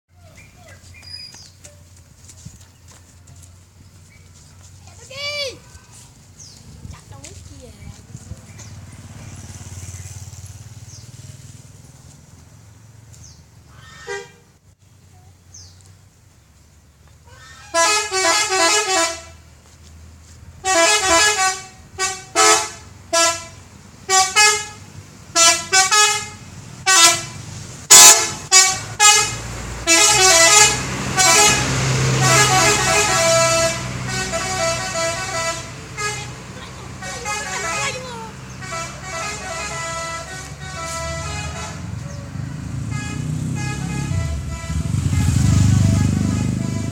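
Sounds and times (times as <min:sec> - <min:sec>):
musical bus horn toots: 0:14.0 - 0:14.5, 0:17.5 - 0:19.4, 0:20.6 - 0:46.9.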